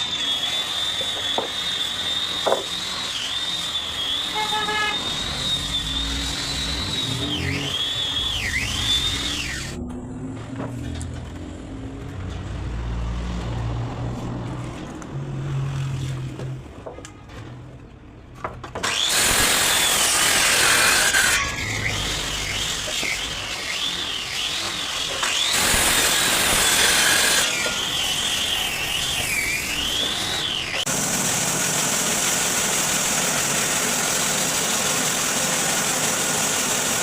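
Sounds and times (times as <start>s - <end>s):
power tool cutting wood: 0.0s - 9.8s, 18.8s - 37.0s.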